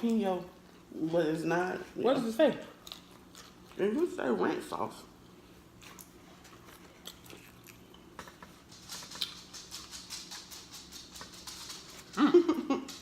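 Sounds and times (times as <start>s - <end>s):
close chewing and lip-smacking: 2.6s - 3.9s, 5.2s - 12.1s.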